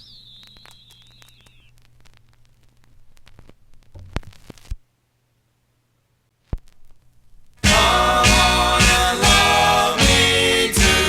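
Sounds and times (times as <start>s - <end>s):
electronic whine: 0.0s - 2.2s
sharp record clicks: 0.0s - 4.8s
vinyl surface crackle: 0.0s - 4.8s.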